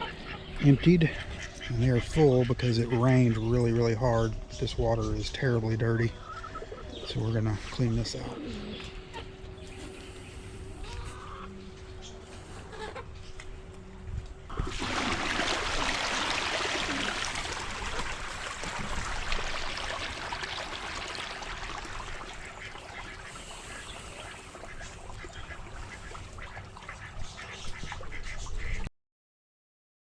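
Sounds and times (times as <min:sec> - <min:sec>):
muddy water splashing and pouring: 0:14.5 - 0:27.8.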